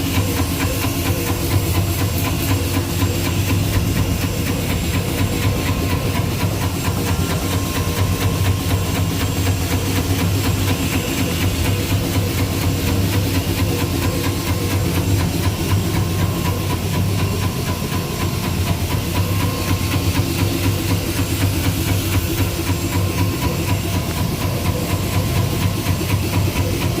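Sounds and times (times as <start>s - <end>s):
drilling machine motor hum: 0.0s - 27.0s
thin steady whine: 0.0s - 27.0s.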